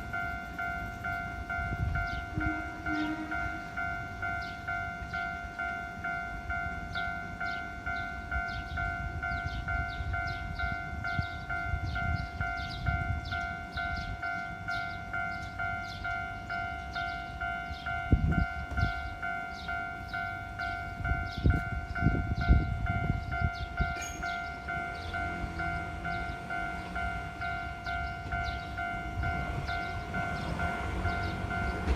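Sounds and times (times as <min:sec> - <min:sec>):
higher bell striking: 0:00.0 - 0:31.9
railroad crossing warning bell: 0:00.0 - 0:31.9.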